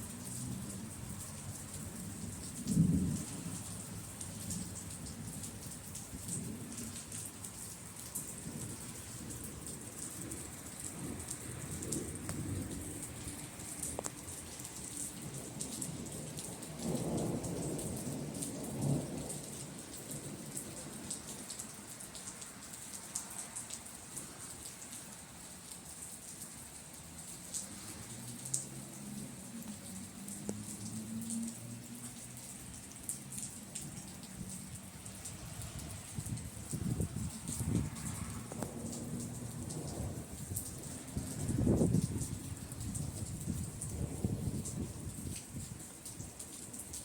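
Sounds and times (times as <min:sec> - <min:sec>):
steady rain falling: 0:00.0 - 0:47.0
thunder rumbling: 0:36.2 - 0:45.6.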